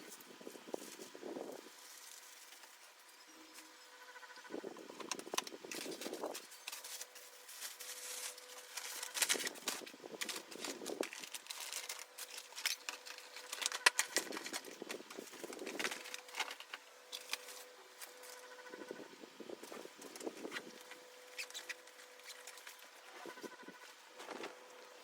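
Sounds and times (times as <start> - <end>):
rustling: 5.0 - 18.7.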